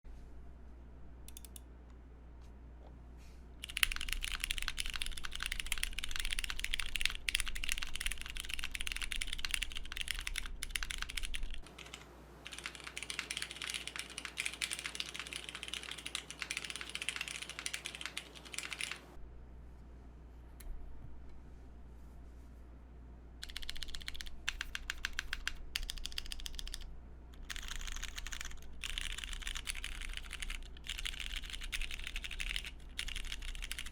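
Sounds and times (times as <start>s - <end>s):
typing on mechanical keyboard: 3.6s - 19.1s, 23.4s - 33.9s.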